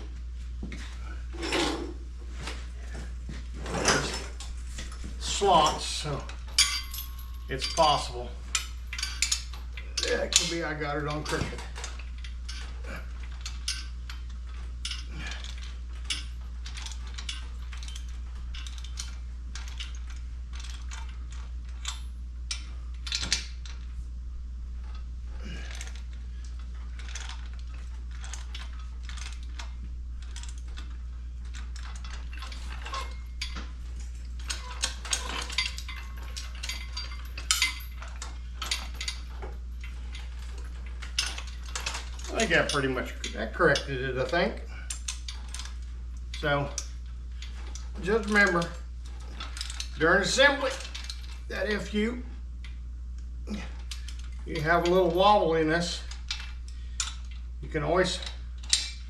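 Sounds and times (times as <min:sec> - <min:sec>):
steady low hum: 0:00.0 - 0:59.0
metal tools clicking and clinking: 0:03.7 - 0:23.9, 0:24.8 - 0:52.8, 0:53.5 - 0:59.0.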